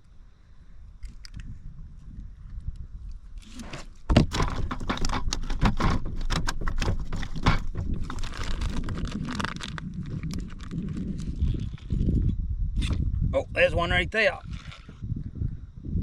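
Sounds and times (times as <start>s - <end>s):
fishing gear knocking and rattling: 3.7s - 11.8s.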